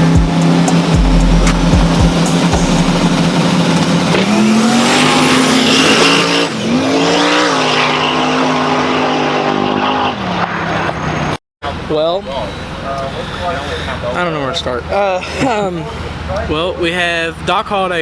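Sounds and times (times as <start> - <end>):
race car engine revving: 0.0 - 11.0.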